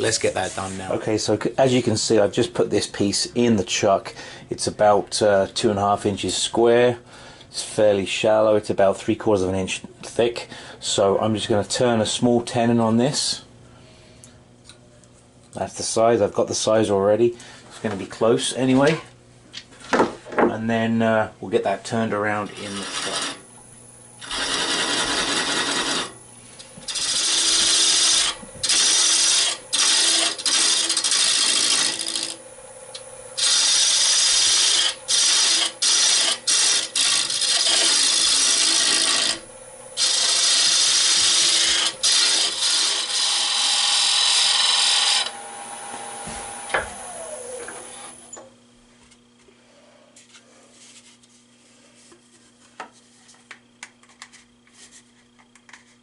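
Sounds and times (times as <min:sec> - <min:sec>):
lathe tool cutting wood: 0:22.4 - 0:23.5, 0:24.2 - 0:26.2, 0:26.8 - 0:32.5, 0:33.3 - 0:48.4
lathe winding down: 0:22.5 - 0:23.4, 0:24.2 - 0:26.2, 0:26.9 - 0:32.4, 0:33.4 - 0:48.4.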